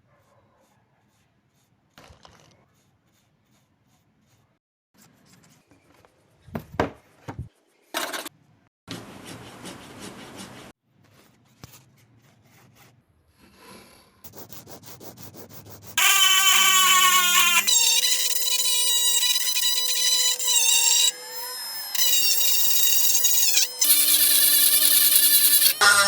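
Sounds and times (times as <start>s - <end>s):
quick regular strokes on wood: 0.6s - 4.6s.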